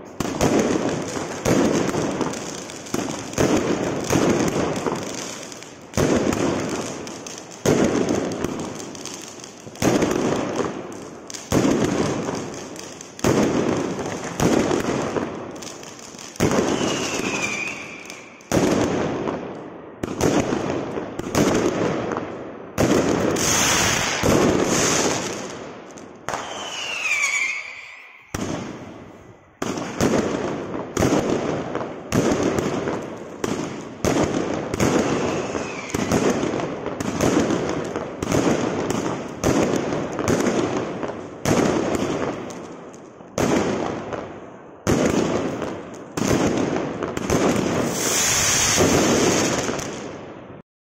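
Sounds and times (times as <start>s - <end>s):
falling firework whistles: 16.4s - 18.4s, 23.4s - 25.3s, 26.3s - 29.4s, 34.7s - 36.3s, 47.8s - 49.9s.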